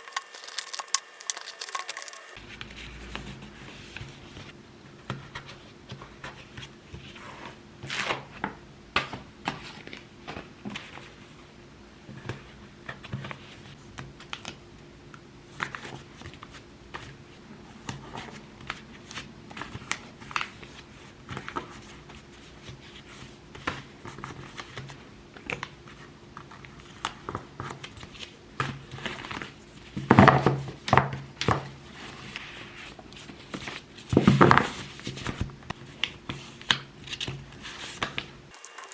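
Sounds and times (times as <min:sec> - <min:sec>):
packaging rustling and crinkling: 0:00.0 - 0:02.4, 0:38.5 - 0:38.9.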